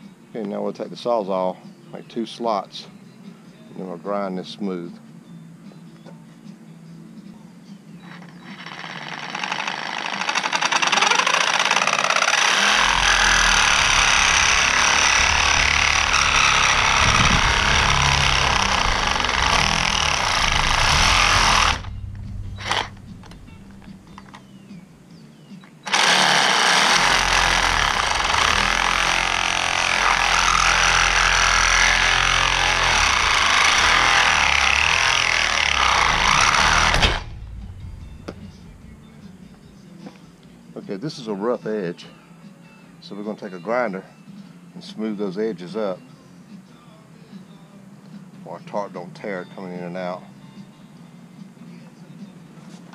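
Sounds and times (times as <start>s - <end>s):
reciprocating saw cutting metal: 8.4s - 24.2s, 25.9s - 39.3s.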